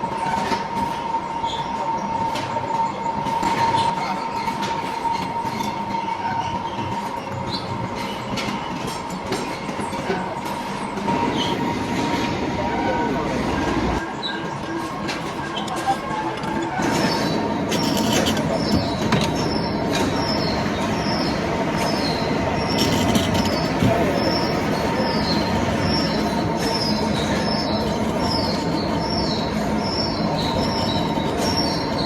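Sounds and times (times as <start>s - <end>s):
metallic squeal: 11.1s - 32.0s
metal lathe whine: 12.6s - 32.0s.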